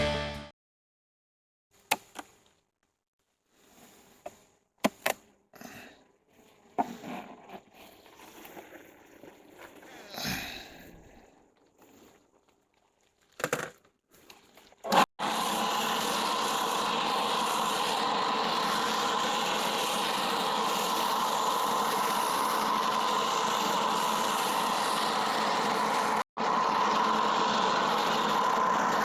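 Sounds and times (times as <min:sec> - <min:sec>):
leaf blower running: 0:14.9 - 0:29.0.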